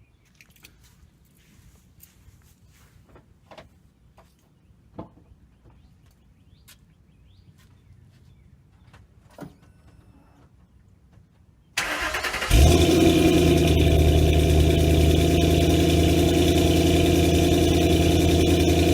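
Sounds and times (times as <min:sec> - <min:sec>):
car engine running: 0:11.8 - 0:18.9
car engine starter cranking: 0:11.8 - 0:18.9.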